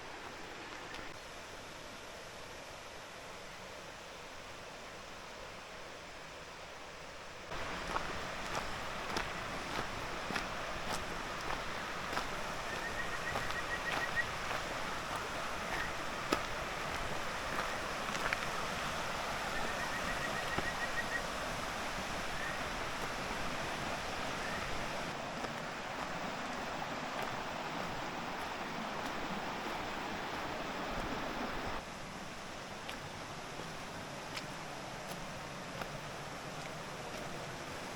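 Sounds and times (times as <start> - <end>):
stream rushing over rocks: 0.0 - 37.9.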